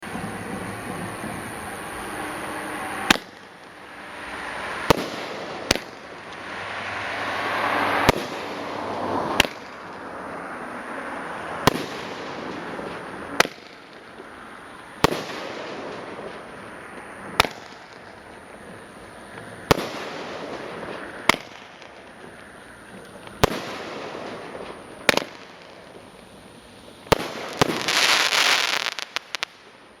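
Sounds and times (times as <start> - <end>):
firework crackling: 0.0 - 30.0
hissing background: 0.0 - 30.0
firework shells bursting: 0.3 - 10.1, 11.6 - 30.0.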